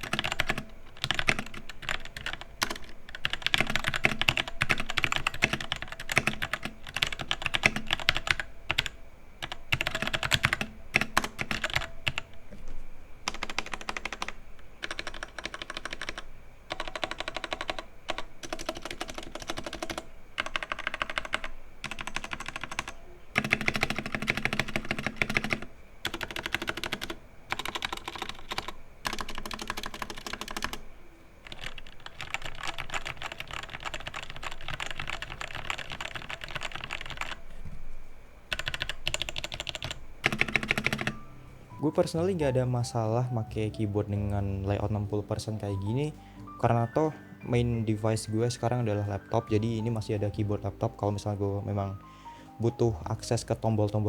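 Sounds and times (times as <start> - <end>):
mechanical keyboard typing: 0.0 - 37.4, 38.5 - 41.4.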